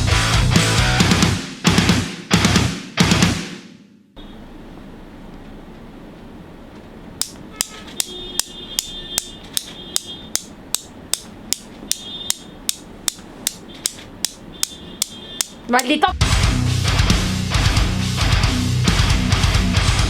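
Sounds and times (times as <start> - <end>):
sharp metallic taps: 7.2 - 16.0.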